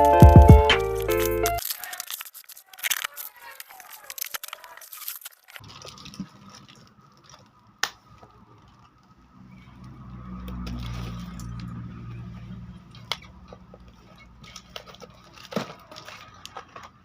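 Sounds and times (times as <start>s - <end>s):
plastic packaging tearing and crinkling: 0.0s - 8.9s, 14.0s - 17.0s.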